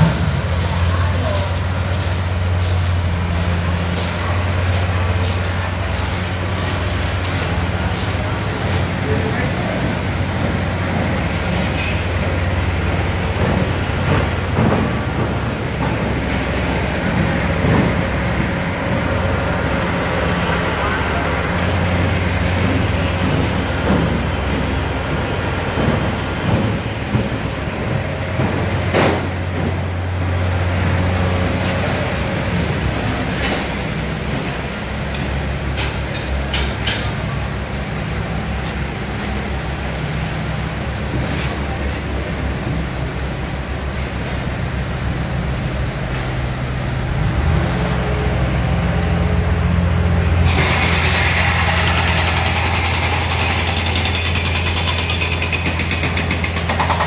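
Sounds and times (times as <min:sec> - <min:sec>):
diesel engine hum: 0:00.0 - 0:57.0
knocks and clanks: 0:12.8 - 0:19.2, 0:22.5 - 0:30.1
loud harsh rattling: 0:50.4 - 0:57.0.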